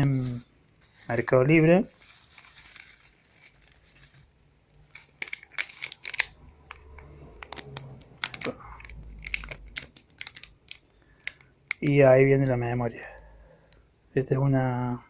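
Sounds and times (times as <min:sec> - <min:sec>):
packaging clicks and crinkles: 0:01.8 - 0:11.9.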